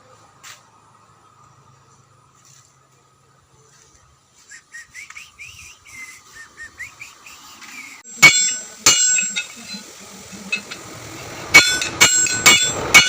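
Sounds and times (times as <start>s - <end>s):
sharp metallic clang: 8.1s - 9.8s, 10.4s - 10.9s, 11.5s - 13.0s.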